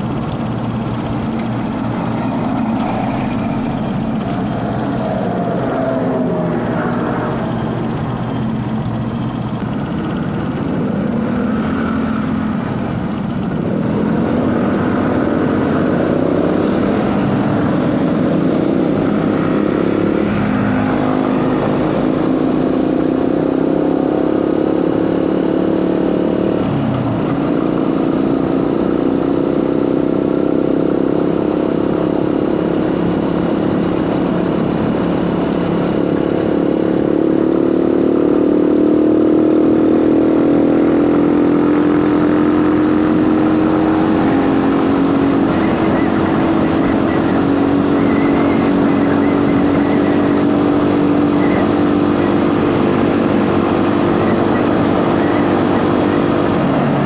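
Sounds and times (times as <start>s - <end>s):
motorcycle engine running: 0.0s - 57.0s
engine intake noise: 41.8s - 57.0s.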